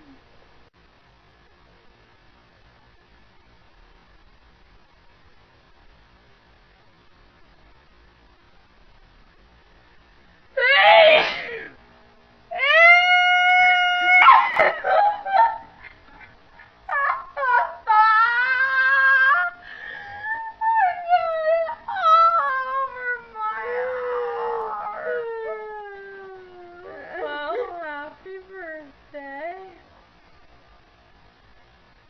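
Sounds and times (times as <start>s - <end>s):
slowed-down sneeze: 10.9s - 11.8s.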